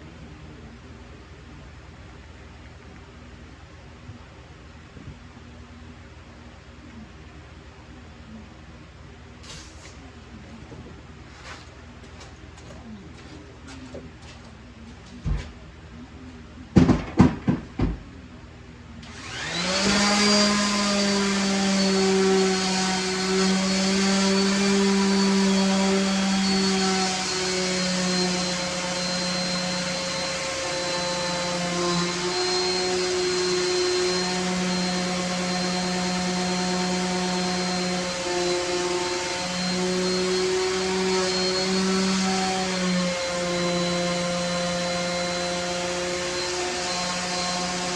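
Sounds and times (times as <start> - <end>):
sharp knocks: 16.8 - 18.0
electric motor spinning up and humming: 19.0 - 47.9.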